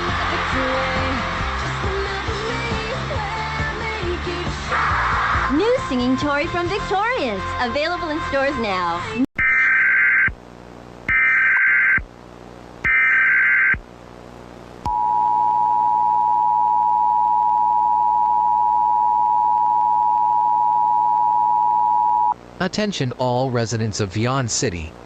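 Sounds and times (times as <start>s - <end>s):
screeching digital header bursts: 9.4s - 10.3s, 11.1s - 12.0s, 12.9s - 13.8s.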